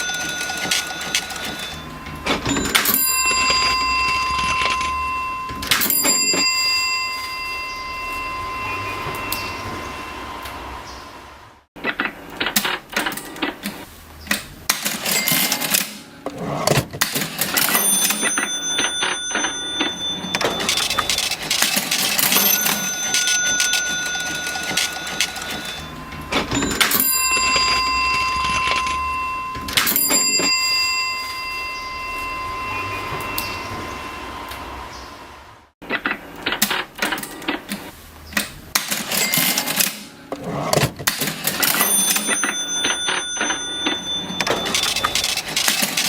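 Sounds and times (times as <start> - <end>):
cash register keys clacking: 0.0 - 8.3, 14.7 - 33.7, 38.7 - 46.0
cash register bell ringing: 0.0 - 11.0, 14.7 - 35.0, 38.8 - 46.0.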